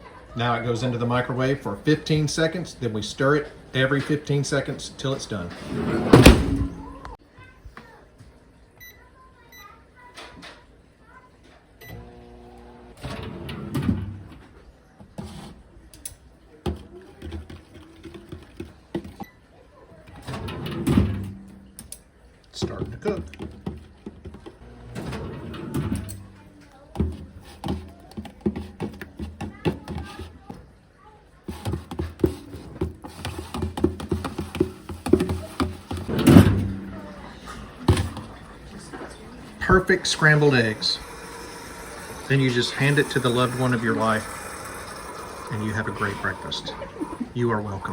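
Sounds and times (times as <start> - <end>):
microwave oven humming: 11.8 - 14.3, 24.6 - 26.9, 36.1 - 47.9
door and dish clicks: 34.6 - 39.1.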